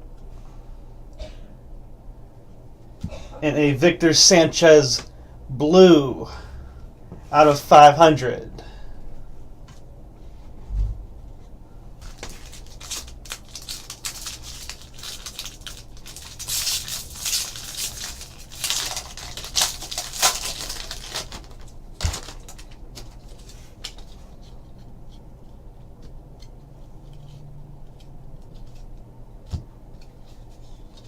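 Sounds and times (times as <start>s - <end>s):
foil wrappers crinkling and tearing: 12.0s - 24.5s
cards rustling and sliding: 12.0s - 24.8s.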